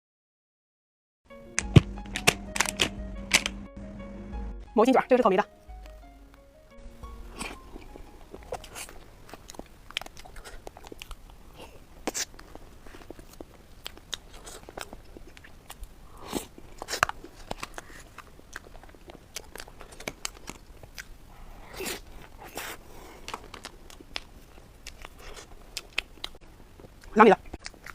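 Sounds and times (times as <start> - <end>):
crunching and chewing snack: 7.3 - 27.9.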